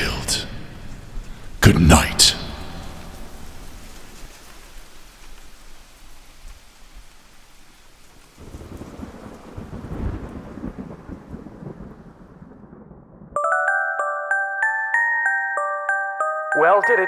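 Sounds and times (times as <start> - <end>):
steady rain: 0.0 - 12.8
low thunder rolling: 8.4 - 13.4.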